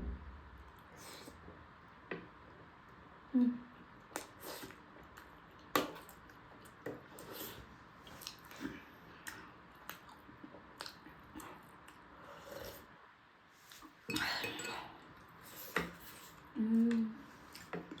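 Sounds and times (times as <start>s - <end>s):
wet chewing and smacking: 8.0s - 8.6s, 9.2s - 12.1s.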